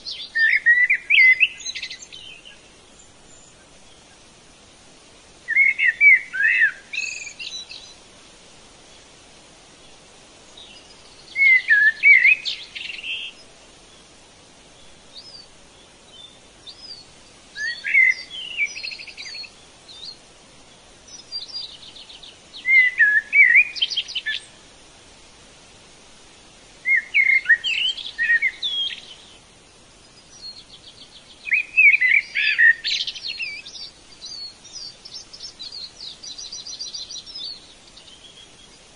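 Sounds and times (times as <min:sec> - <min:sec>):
faint steady hiss: 0:00.0 - 0:38.9
songbird warbling with trills: 0:05.5 - 0:08.0, 0:10.6 - 0:13.4, 0:16.7 - 0:20.2, 0:21.2 - 0:24.6, 0:26.9 - 0:29.3, 0:30.4 - 0:38.3.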